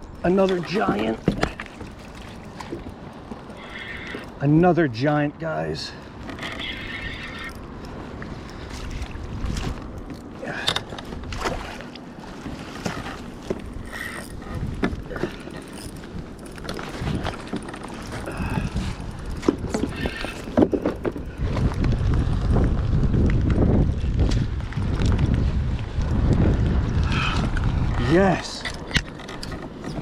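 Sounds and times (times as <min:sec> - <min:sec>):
wind buffeting microphone: 0:06.4 - 0:10.2, 0:12.5 - 0:30.0
knocks and clicks of gear: 0:12.8 - 0:18.1, 0:28.6 - 0:30.0.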